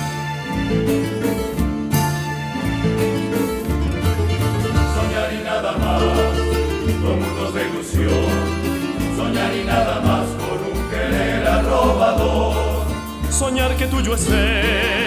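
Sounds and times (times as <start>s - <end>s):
bass line: 0.0s - 15.0s
plucked string ensemble playing: 0.0s - 15.0s
choir singing: 4.1s - 15.0s.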